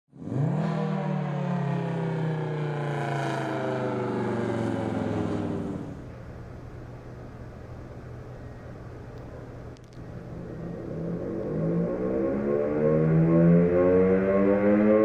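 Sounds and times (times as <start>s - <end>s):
warning siren low growl: 0.1s - 6.2s, 10.1s - 15.0s
faint low hum: 4.1s - 14.6s.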